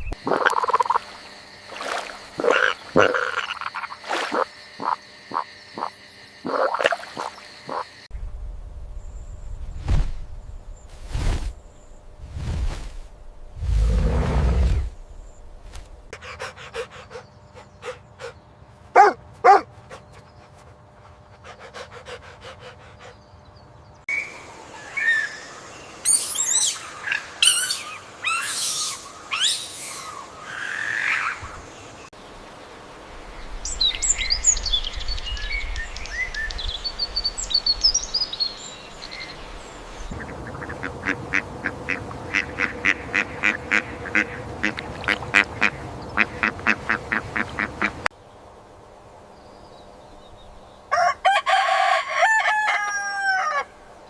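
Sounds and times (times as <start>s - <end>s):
duck quacks: 40.2s - 48.1s.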